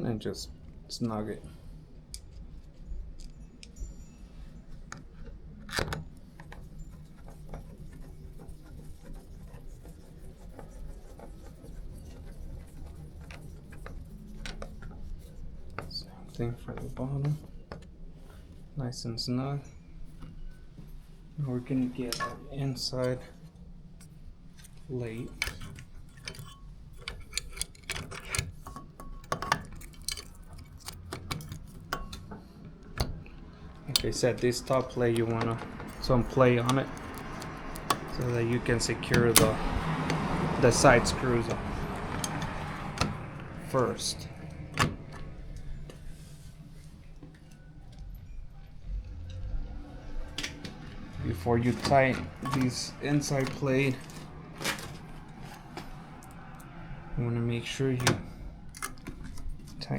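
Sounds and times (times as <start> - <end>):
steady low hum: 0.0 - 59.9
screwdriver clicking and scraping metal: 24.0 - 32.3, 33.8 - 45.7.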